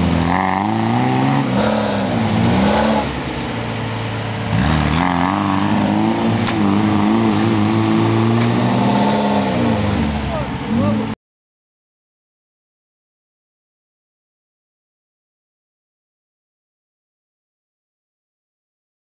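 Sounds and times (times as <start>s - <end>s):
off-road engine revving: 0.0s - 11.2s.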